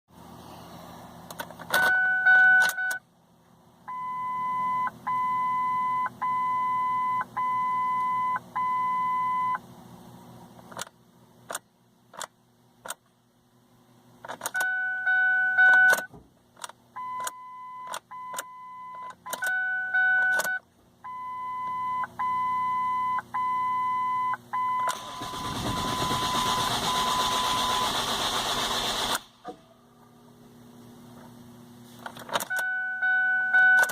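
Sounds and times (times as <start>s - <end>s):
dashboard warning chimes beeping: 1.7s - 3.0s, 3.9s - 9.6s, 14.5s - 16.1s, 17.0s - 27.9s, 32.5s - 33.9s
ignition key and relay clicks: 19.1s - 19.6s, 32.1s - 32.8s
starter cranking engine: 24.9s - 29.5s.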